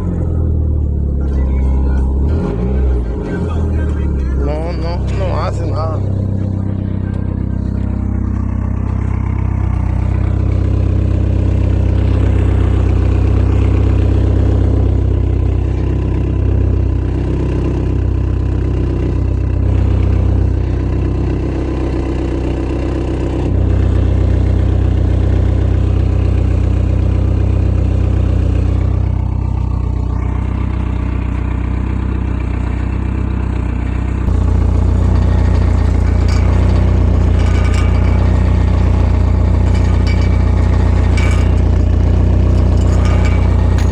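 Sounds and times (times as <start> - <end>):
car engine idling and revving: 0.0 - 43.9.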